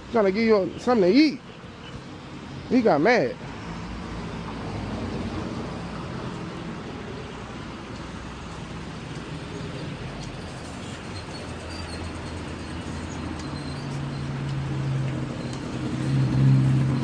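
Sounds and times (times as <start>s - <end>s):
road noise: 0.0s - 17.0s
deeper engine tone: 12.6s - 17.0s.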